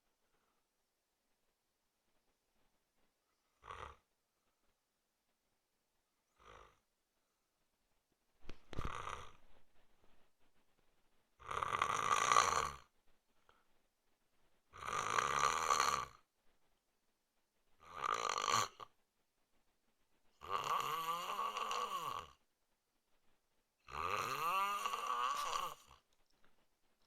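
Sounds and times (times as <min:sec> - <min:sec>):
man snoring: 0:03.6 - 0:04.0, 0:06.4 - 0:06.8, 0:08.8 - 0:09.4, 0:11.4 - 0:12.9, 0:14.7 - 0:16.2, 0:17.8 - 0:18.9, 0:20.4 - 0:22.4, 0:23.9 - 0:26.0.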